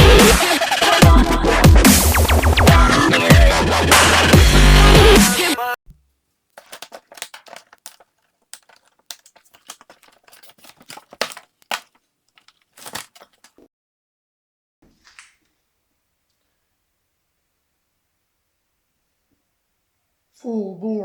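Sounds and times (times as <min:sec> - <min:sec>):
packaging crinkling and tearing: 0:05.9 - 0:13.6.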